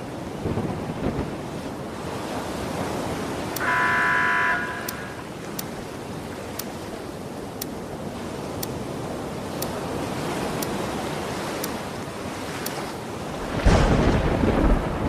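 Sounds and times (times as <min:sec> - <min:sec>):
surf rushing: 0:00.0 - 0:07.4, 0:08.0 - 0:15.0
wind: 0:00.0 - 0:15.0
horn beep: 0:03.6 - 0:05.3.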